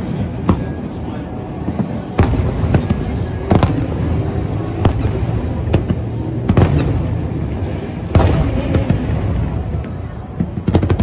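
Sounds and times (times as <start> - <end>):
fireworks bangs: 0.0 - 11.0
low rumble of fireworks display: 0.0 - 11.0.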